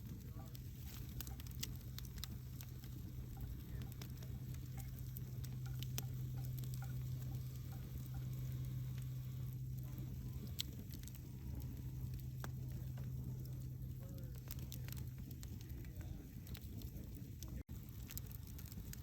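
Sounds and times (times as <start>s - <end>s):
fire hissing: 0.0s - 19.0s
low hum: 0.0s - 19.0s
wood fire crackling: 0.0s - 19.0s.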